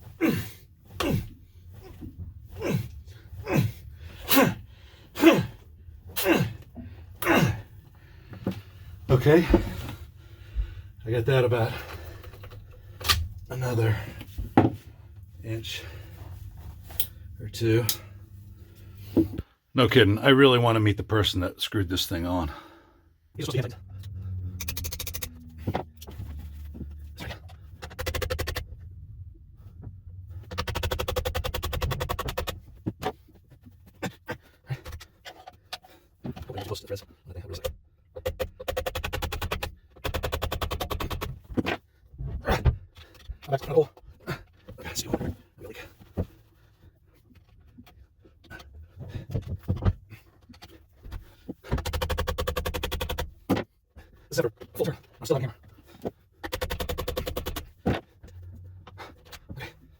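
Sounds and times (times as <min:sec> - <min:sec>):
low hum: 0:08.0 - 0:19.4, 0:22.7 - 0:31.0.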